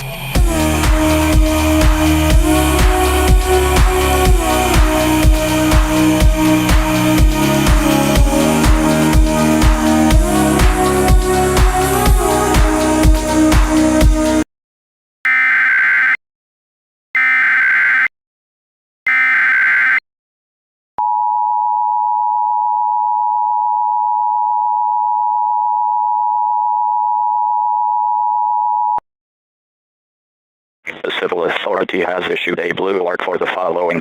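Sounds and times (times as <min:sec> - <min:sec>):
data tone bursts: 0:19.1 - 0:20.0.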